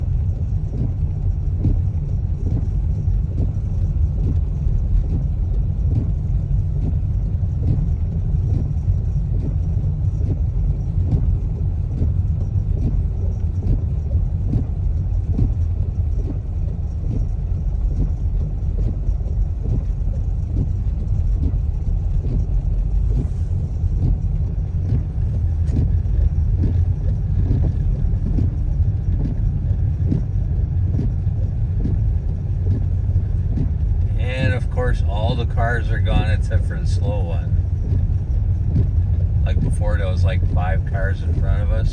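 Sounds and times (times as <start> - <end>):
car engine and tyre noise: 0.0 - 41.9.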